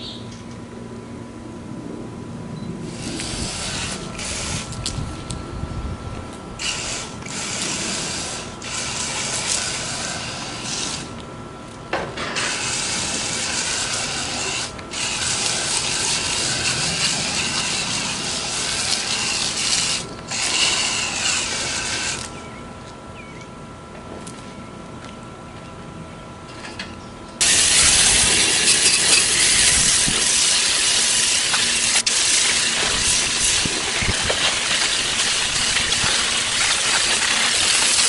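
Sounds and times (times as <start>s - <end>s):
hose nozzle spraying water: 2.9s - 5.0s, 6.6s - 11.2s, 12.4s - 22.3s, 27.4s - 38.0s.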